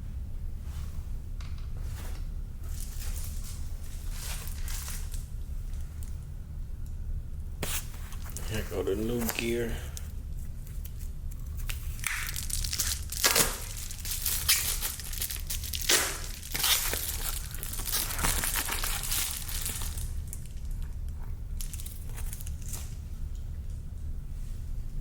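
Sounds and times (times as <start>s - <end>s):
steady low hum: 0.0s - 25.0s
plastic packaging crinkling: 7.7s - 23.0s.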